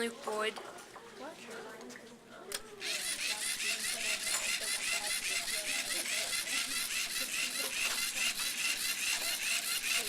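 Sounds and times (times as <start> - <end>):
robot motors and gears running: 2.9 - 10.0.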